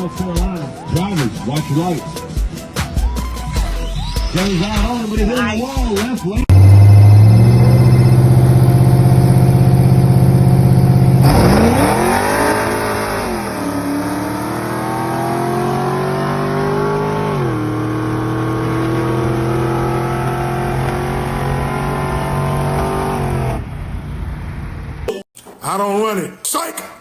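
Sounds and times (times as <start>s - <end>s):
race car engine accelerating: 6.5s - 24.4s.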